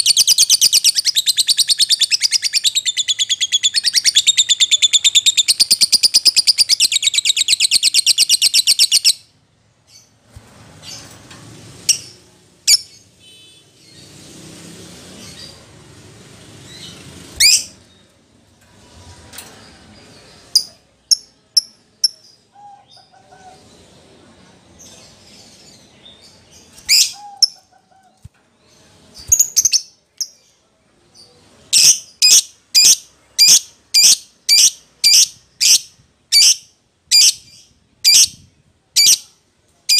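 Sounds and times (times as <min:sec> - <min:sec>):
lovebird trilling and chirping: 0:16.7 - 0:17.9, 0:26.6 - 0:28.2.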